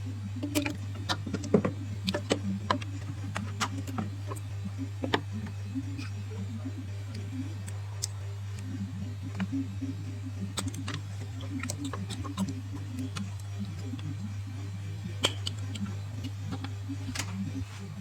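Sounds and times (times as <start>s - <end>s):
quiet background music: 0.0s - 18.0s
steady low hum: 0.0s - 18.0s
tools clicking and tapping: 15.2s - 15.9s.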